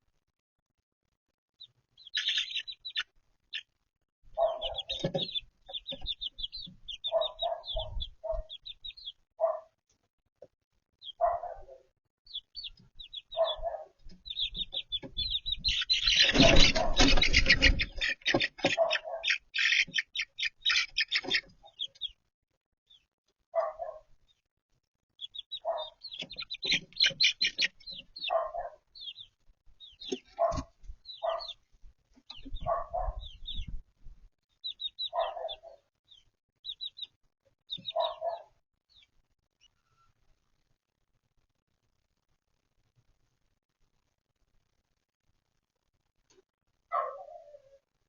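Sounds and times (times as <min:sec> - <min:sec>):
chicks peeping: 0:01.6 - 0:09.6, 0:11.0 - 0:11.6, 0:12.3 - 0:22.2, 0:25.2 - 0:39.8
hen clucking: 0:02.0 - 0:03.7, 0:04.4 - 0:09.6, 0:12.3 - 0:22.2, 0:25.2 - 0:31.6, 0:34.6 - 0:35.8, 0:36.6 - 0:38.5.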